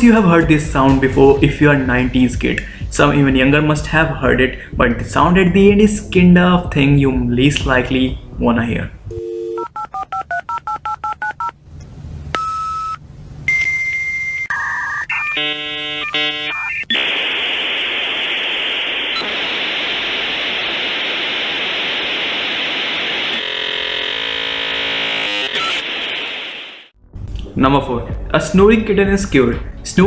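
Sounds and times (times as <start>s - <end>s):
warbling modem handshake tones: 13.5s - 26.8s
steady modem hiss: 15.4s - 26.9s.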